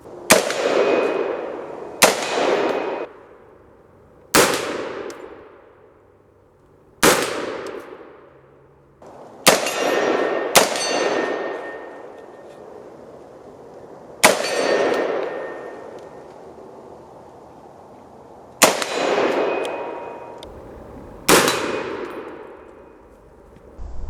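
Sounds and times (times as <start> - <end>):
rifle shots: 0.3 - 3.1, 4.3 - 5.6, 7.0 - 8.3, 9.0 - 12.1, 18.6 - 23.8
steel target ringing clang: 9.6 - 12.3, 14.3 - 15.9, 18.8 - 23.4.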